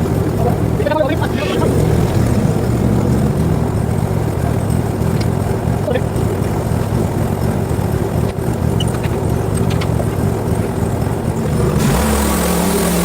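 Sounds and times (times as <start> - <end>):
petrol engine running: 0.0 - 13.0
steady hum: 10.3 - 13.0.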